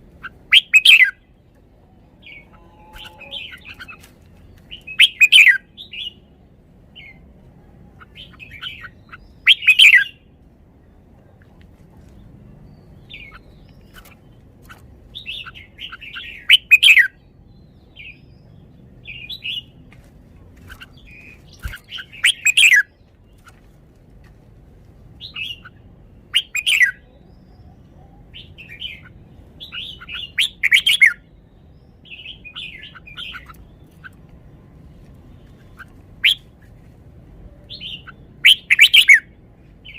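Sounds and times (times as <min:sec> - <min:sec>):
bird singing whistled phrases: 0:00.5 - 0:01.2, 0:02.3 - 0:04.0, 0:04.8 - 0:06.2, 0:09.4 - 0:10.2, 0:26.4 - 0:27.0, 0:29.7 - 0:31.2, 0:36.2 - 0:36.4, 0:37.8 - 0:39.2.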